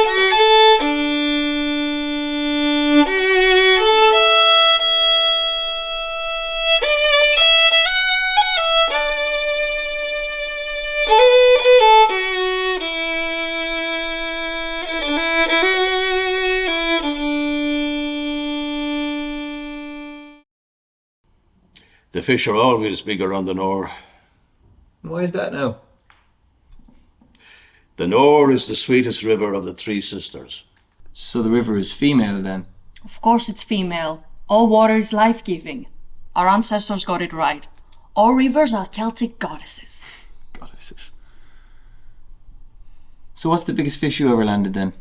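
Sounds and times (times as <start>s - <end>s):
solo violin melody: 0.0s - 20.4s.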